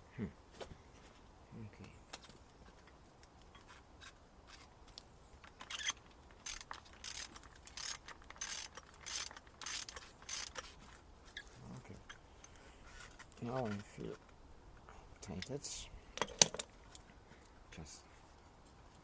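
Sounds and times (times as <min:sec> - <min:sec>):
ratchet wrench clicking: 0:05.6 - 0:10.6.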